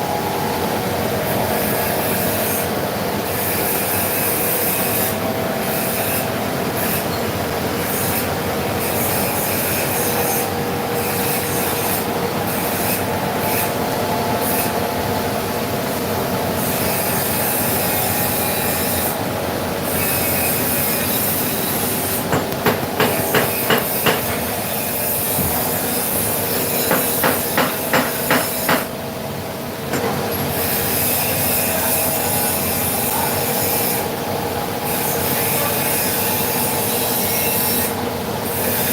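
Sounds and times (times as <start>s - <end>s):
milling machine grinding and whining: 0.0s - 28.7s.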